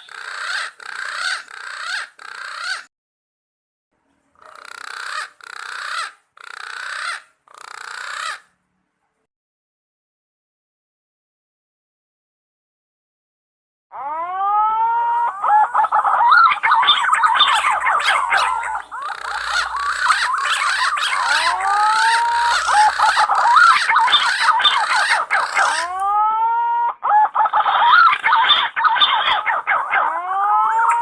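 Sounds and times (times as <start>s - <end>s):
pigeons whistling calls: 14.8s - 31.0s.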